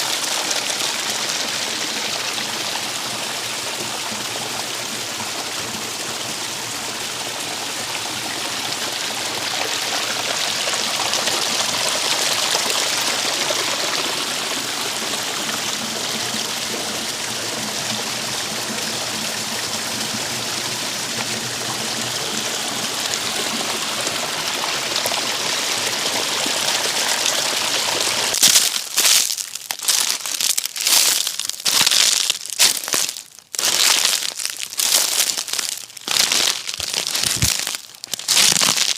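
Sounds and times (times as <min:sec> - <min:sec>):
creek water flowing: 0:00.0 - 0:38.9
footsteps on dry leaves: 0:28.4 - 0:38.9.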